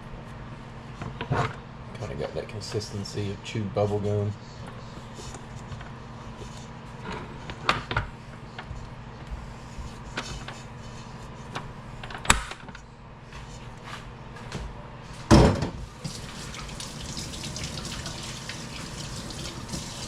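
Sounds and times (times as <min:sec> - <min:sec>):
steady low hum: 0:00.0 - 0:19.9
kitchen tap running: 0:15.8 - 0:20.0.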